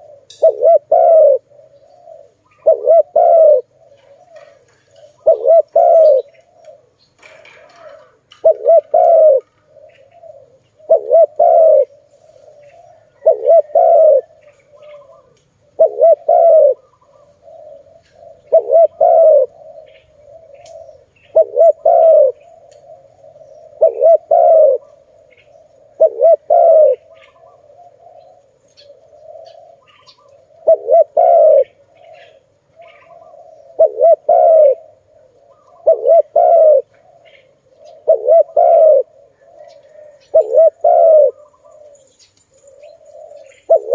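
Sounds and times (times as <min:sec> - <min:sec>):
dove cooing: 0:00.0 - 0:43.9.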